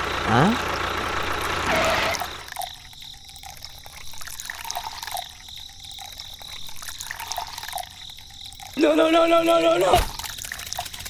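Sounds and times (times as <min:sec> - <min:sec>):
small ticks: 0:02.2 - 0:11.0
water trickling and dripping: 0:02.2 - 0:11.0.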